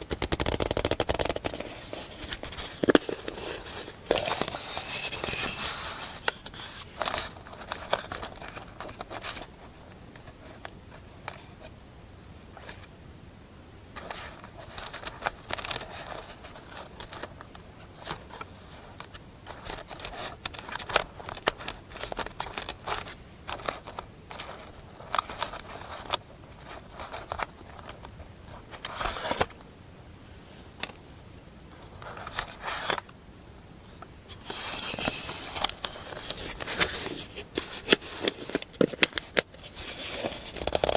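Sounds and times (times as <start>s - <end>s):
scissors snipping paper: 0.0s - 1.8s
paper rustling: 0.0s - 9.6s, 14.0s - 29.6s, 32.0s - 33.1s, 34.3s - 40.9s.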